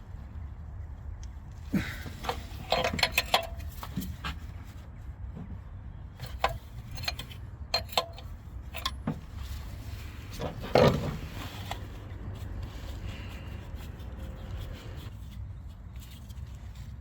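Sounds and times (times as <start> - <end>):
hand tools clicking and knocking: 2.2 - 3.9, 6.2 - 9.0.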